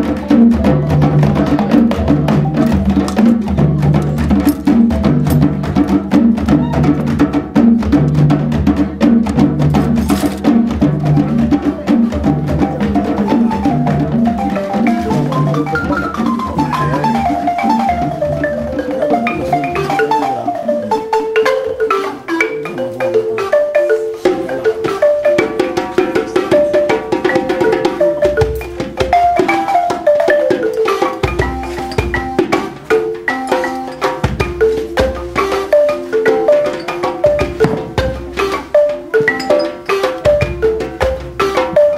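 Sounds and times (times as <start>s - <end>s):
balafon runs: 0.0s - 41.9s
low thumps: 36.6s - 41.9s.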